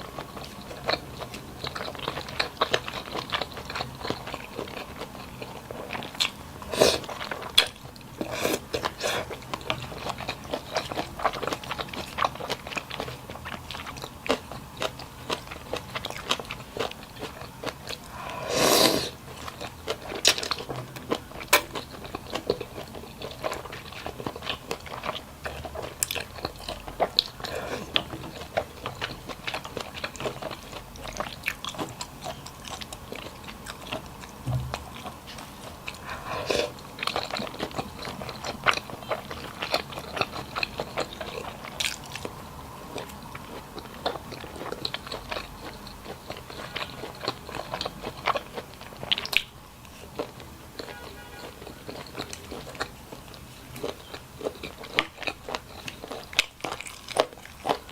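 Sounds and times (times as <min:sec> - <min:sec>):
person chewing and crunching: 0:00.0 - 0:57.9.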